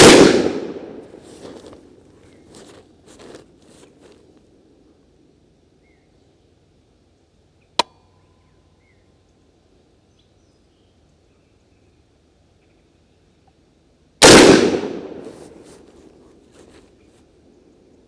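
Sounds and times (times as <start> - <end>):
rifle gunshot: 0.0 - 1.0, 14.2 - 15.3.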